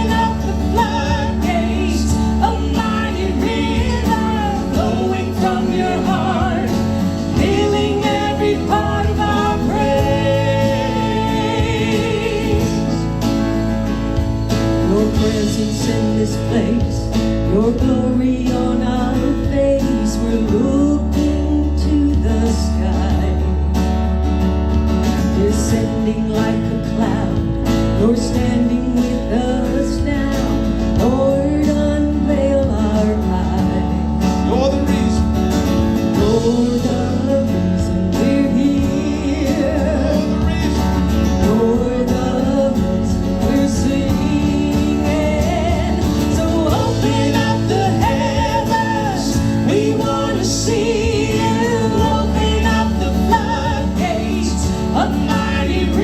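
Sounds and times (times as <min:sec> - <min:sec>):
voices singing: 0:00.0 - 0:13.7, 0:25.4 - 0:56.0
band playing a worship song: 0:00.0 - 0:56.0.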